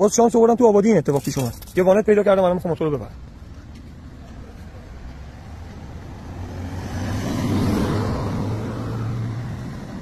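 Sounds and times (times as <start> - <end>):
vehicle passing by: 4.7 - 10.0.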